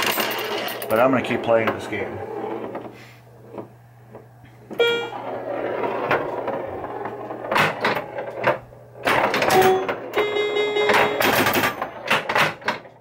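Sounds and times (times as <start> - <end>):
pinball ball and flipper clacks: 0.0 - 1.8, 3.5 - 13.0
steady low hum: 0.0 - 12.6
short electronic tone: 4.8 - 5.3, 9.5 - 11.4.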